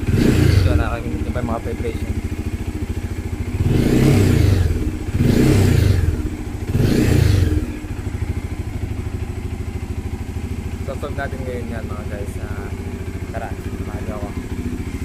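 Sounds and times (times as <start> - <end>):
motorcycle engine idling and revving: 0.0 - 15.0.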